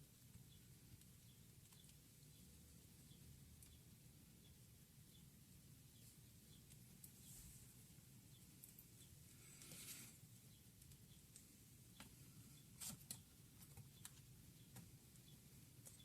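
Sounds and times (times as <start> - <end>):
quiet room hum: 0.0 - 16.0.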